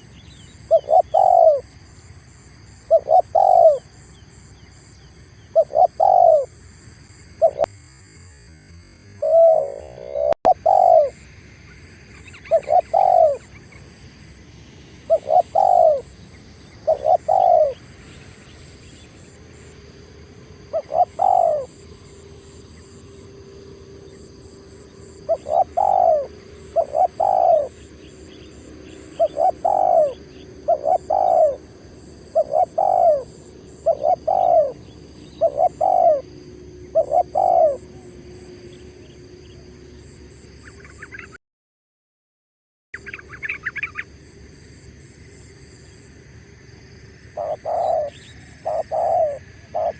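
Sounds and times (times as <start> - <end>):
dove cooing: 0.7 - 1.7, 2.9 - 4.0, 5.4 - 6.5, 7.4 - 7.7, 9.2 - 11.2, 12.2 - 13.7, 15.0 - 18.0, 20.3 - 39.8, 47.4 - 49.9.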